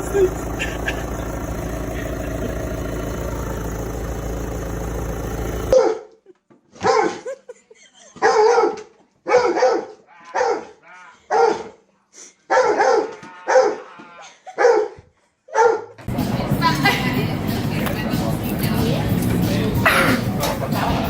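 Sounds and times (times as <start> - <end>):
dog barking: 5.7 - 6.1, 6.8 - 7.3, 8.2 - 11.8, 12.5 - 13.9, 14.5 - 16.0.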